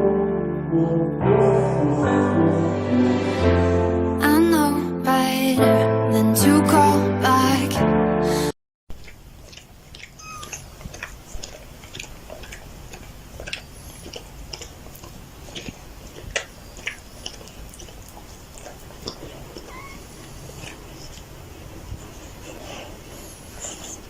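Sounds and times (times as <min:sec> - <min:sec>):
animal clicking and chewing: 0:08.9 - 0:24.0
faint high chirps: 0:10.2 - 0:10.8.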